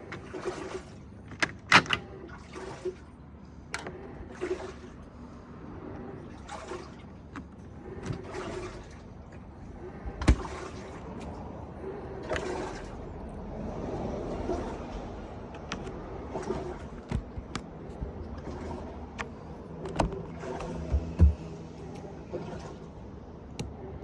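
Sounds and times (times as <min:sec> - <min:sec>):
heavy thump: 0:20.6 - 0:21.6.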